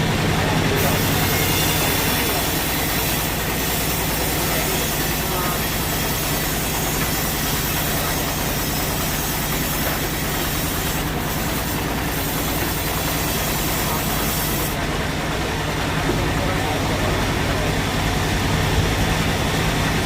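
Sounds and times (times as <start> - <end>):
sawmill machinery humming: 0.0 - 20.0
machinery hiss: 0.8 - 14.8.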